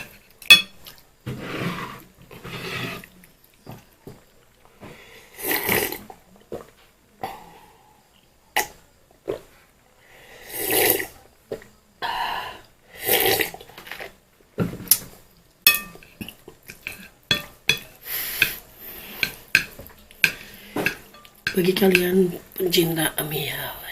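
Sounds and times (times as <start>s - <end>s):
metal cutlery clinking on plate: 0.0s - 0.8s, 15.7s - 18.6s, 19.2s - 22.2s
slurping and chewing noodles: 5.3s - 6.1s, 10.4s - 11.2s, 13.0s - 14.2s.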